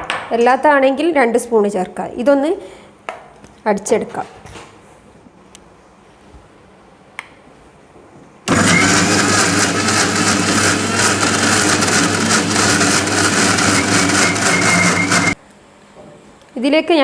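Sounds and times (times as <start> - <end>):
mixer grinder running: 8.5 - 15.4.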